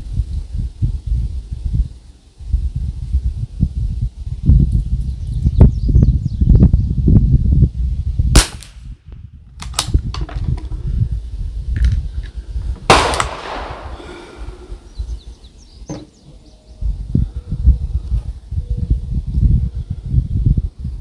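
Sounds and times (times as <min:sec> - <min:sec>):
steady low rumble: 0:07.9 - 0:15.3
rifle shots: 0:08.4 - 0:08.8, 0:12.9 - 0:14.8.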